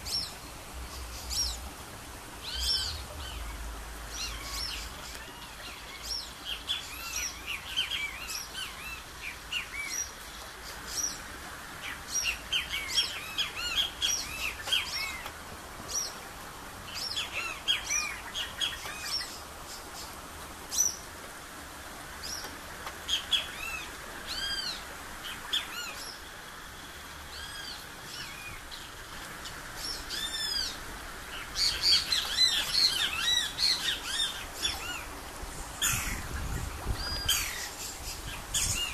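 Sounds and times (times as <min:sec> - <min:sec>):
birds chirping and singing: 0:02.4 - 0:11.2, 0:16.9 - 0:21.0, 0:29.8 - 0:35.2, 0:35.8 - 0:38.9.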